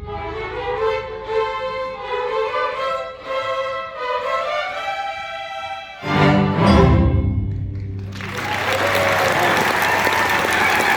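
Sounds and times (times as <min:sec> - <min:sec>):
violins melody: 0:00.0 - 0:08.1
orchestra playing: 0:00.0 - 0:10.9.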